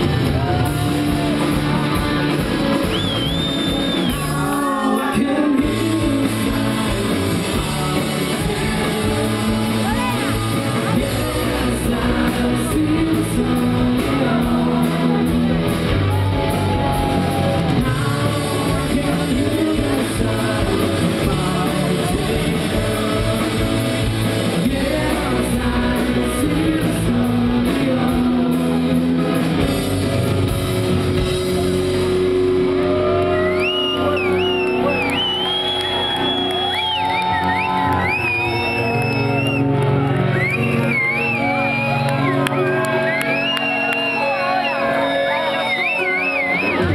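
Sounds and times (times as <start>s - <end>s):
high sliding lead guitar: 0.0s - 46.9s
live rock band: 0.0s - 46.9s
person singing: 4.0s - 29.7s.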